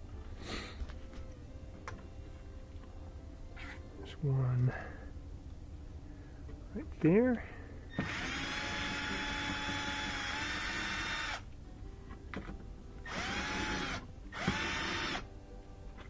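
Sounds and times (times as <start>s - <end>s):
power drill-driver whining: 7.9s - 11.4s, 12.4s - 15.3s.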